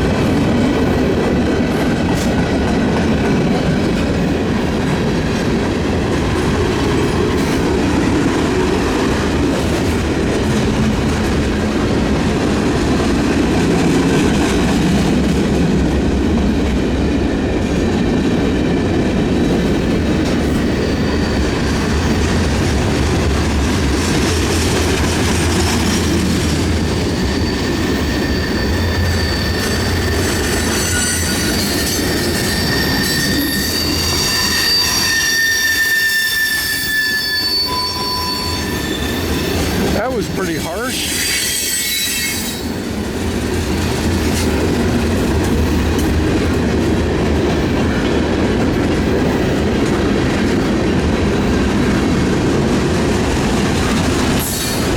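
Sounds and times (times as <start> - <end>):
clickety-clack at rail joints: 0.0 - 54.9
train wheels rumbling on rail: 0.0 - 54.9
high wheel squeal: 20.6 - 22.4, 26.6 - 43.0.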